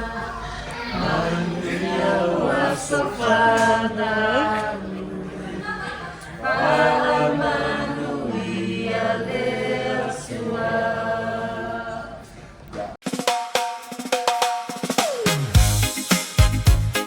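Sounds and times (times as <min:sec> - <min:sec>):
voices singing sustained chords: 0:00.0 - 0:12.3
music with sharp drum hits: 0:13.0 - 0:17.0.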